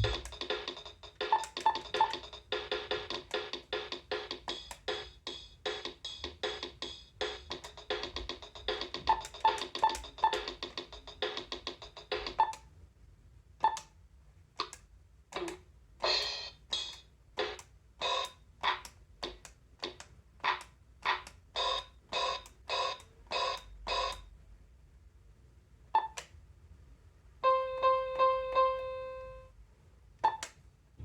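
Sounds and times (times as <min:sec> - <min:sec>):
toy keyboard drum rhythm: 0:00.0 - 0:12.6, 0:15.4 - 0:24.2.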